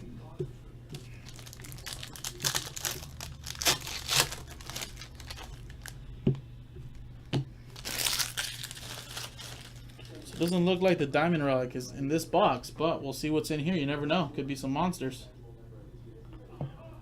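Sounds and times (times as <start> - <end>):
plastic and foil crinkling: 1.0 - 6.0, 7.7 - 10.7.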